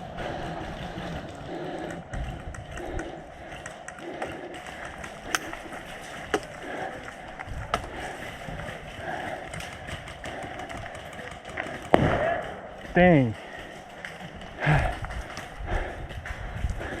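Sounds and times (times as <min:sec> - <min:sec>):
airsoft gunfire snaps: 0:11.7 - 0:12.6.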